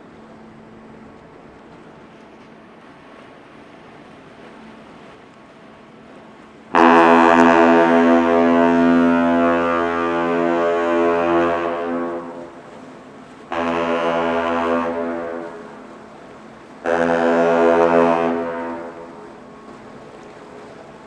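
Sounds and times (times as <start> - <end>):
deep horn blasts: 6.7 - 19.8.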